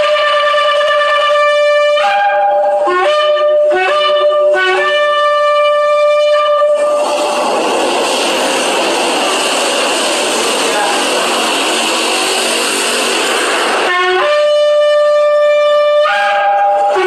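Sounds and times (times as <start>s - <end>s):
shofar blowing: 0.0s - 7.1s, 13.8s - 17.0s.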